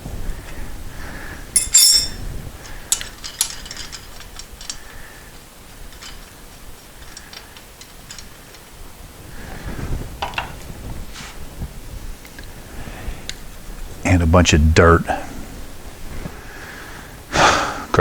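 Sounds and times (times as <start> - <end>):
metal hand tools clinking: 1.6 - 2.3.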